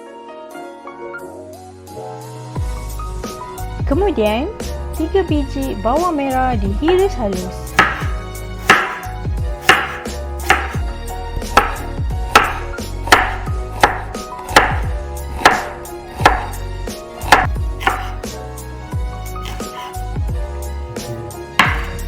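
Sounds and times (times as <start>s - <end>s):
background music: 0.0s - 22.0s
knife slicing on cutting board: 7.7s - 10.8s, 17.3s - 18.3s, 19.3s - 20.0s, 21.0s - 22.0s.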